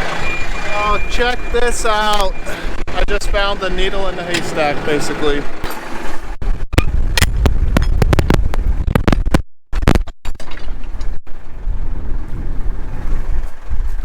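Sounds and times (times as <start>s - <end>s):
tractor engine idling: 0.0s - 6.4s.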